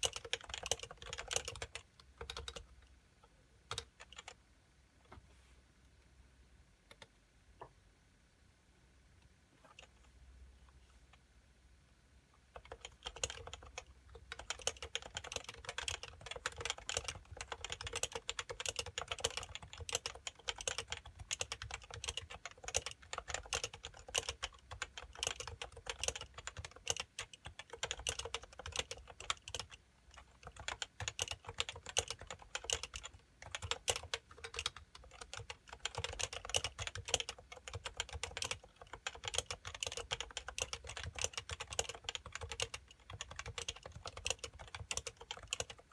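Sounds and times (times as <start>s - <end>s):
fast keyboard typing: 0.0s - 2.7s, 3.7s - 4.4s, 12.6s - 45.9s.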